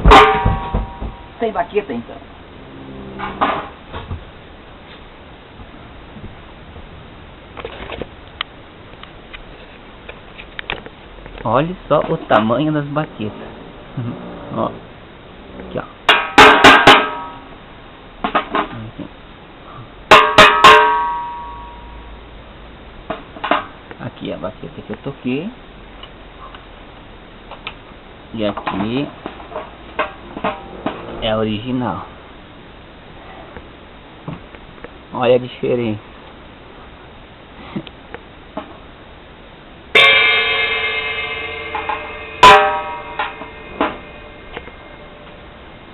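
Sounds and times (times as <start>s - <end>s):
cymbal struck and ringing: 20.1s - 22.2s, 39.9s - 45.9s.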